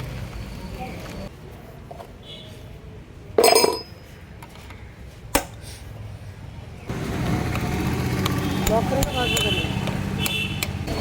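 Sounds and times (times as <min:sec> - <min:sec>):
metal tools clinking: 0:03.4 - 0:04.1.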